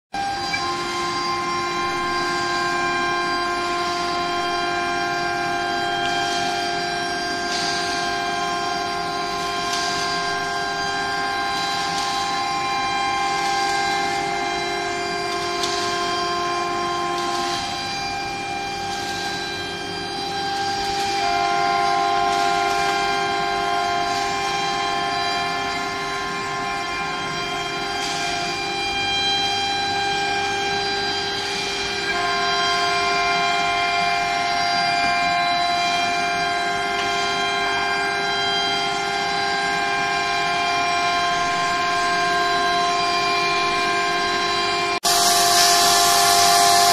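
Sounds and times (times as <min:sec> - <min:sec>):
router spindle whining: 0:00.2 - 0:37.0, 0:44.4 - 0:46.9
cutting hiss: 0:45.1 - 0:46.9.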